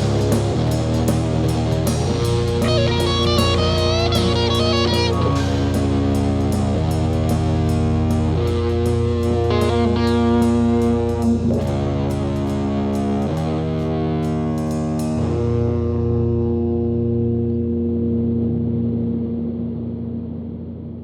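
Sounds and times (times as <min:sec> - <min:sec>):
drums with cymbal hits: 0:00.0 - 0:15.5
electric guitar chords: 0:00.0 - 0:21.0.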